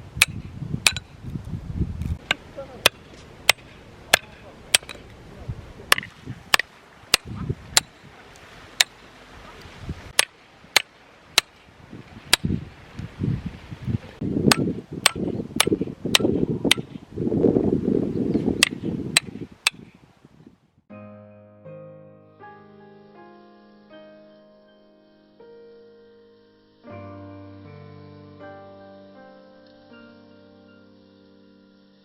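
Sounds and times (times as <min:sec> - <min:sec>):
low rustling noise: 0:00.0 - 0:11.2
firewood being chopped: 0:02.2 - 0:05.1, 0:05.9 - 0:08.0, 0:08.8 - 0:09.0, 0:10.1 - 0:11.7, 0:12.3 - 0:12.5, 0:14.5 - 0:16.9, 0:18.6 - 0:19.8.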